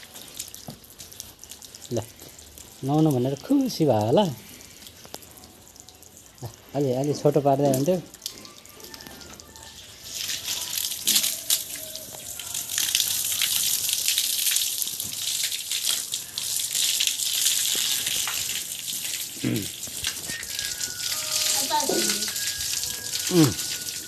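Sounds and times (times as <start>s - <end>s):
water gushing and splashing: 9.8s - 24.0s.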